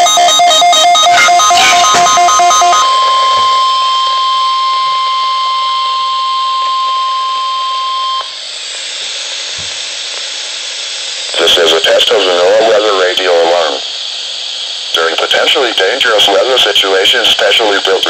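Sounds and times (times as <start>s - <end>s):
digital header bursts: 0.0s - 6.4s
warning alarm tone: 0.0s - 8.4s
radio hiss: 1.1s - 5.2s, 8.2s - 18.0s.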